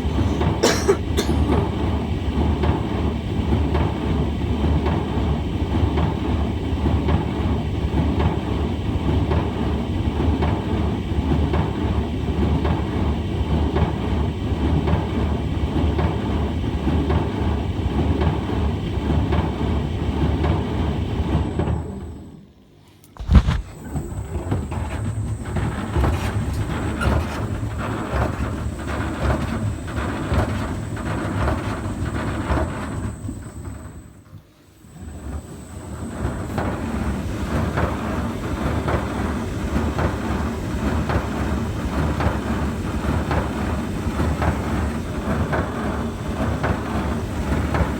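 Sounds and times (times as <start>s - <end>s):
tumble dryer rumbling drone: 23.2s - 33.9s.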